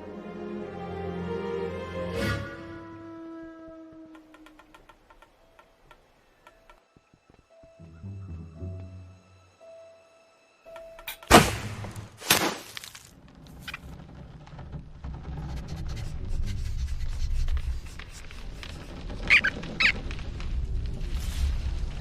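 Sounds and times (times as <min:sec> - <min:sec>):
low rumbling noise: 0:13.2 - 0:22.0.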